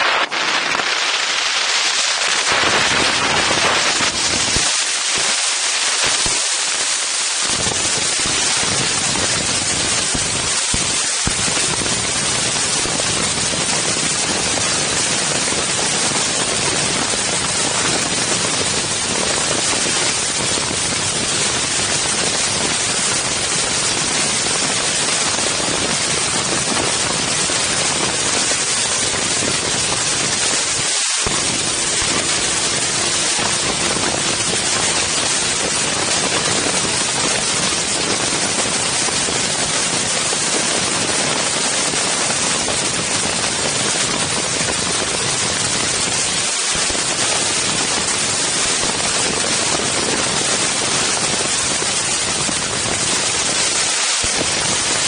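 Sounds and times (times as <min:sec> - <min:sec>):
wind noise on microphone: 0:00.0 - 0:55.0
faint steady hum: 0:25.6 - 0:39.0.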